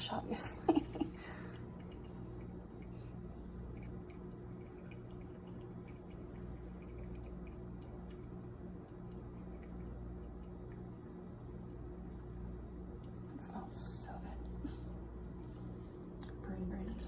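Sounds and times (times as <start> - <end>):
steady low hum: 0.0 - 17.0
coffee dripping into carafe: 0.3 - 12.0.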